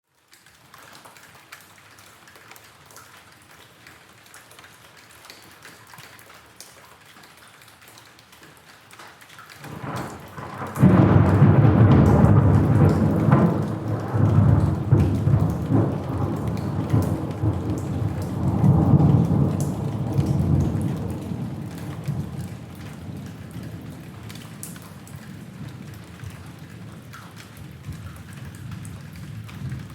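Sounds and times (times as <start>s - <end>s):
rain hissing: 9.6s - 24.7s
thunder rumbling: 9.6s - 29.9s.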